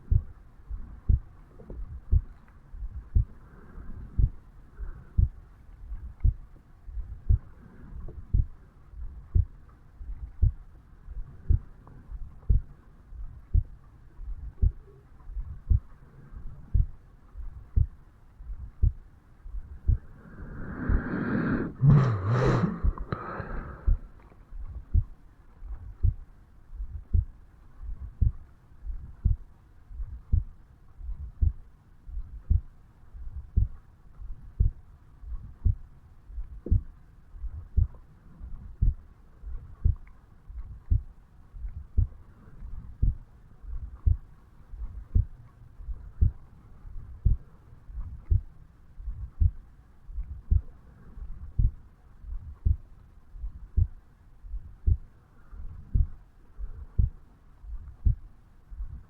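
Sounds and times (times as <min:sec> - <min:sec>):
heartbeat thuds: 0:00.0 - 0:59.0.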